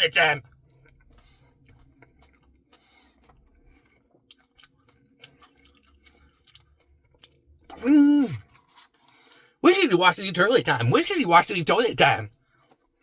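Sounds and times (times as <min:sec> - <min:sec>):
soft chewing with wet smacks: 0:00.6 - 0:09.5, 0:12.4 - 0:12.9.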